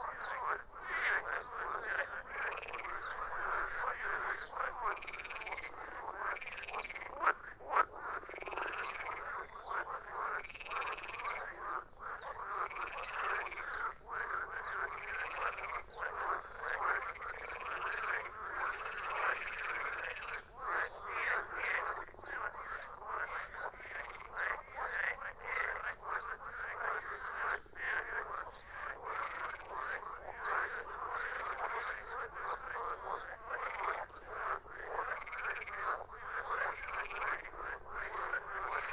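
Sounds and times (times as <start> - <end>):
frogs croaking: 0.0 - 38.9
sharp loud frog croaks: 0.1 - 38.9.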